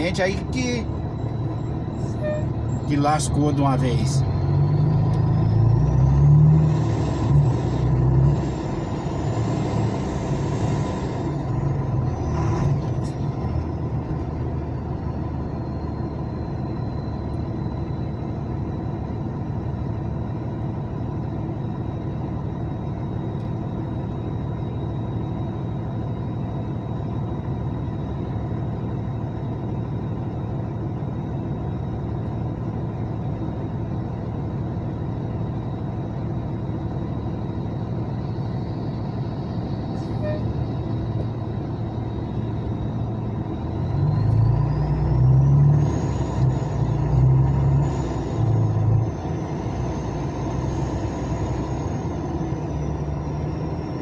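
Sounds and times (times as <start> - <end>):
truck engine idling: 0.0 - 5.2, 8.7 - 44.4.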